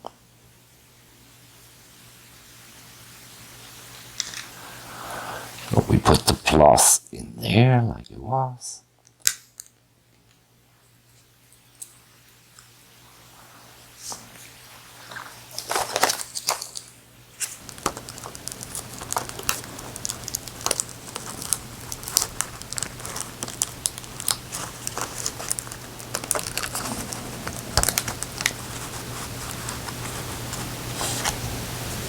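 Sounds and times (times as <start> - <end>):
small clicks and crinkling: 4.1 - 4.6, 14.0 - 31.4.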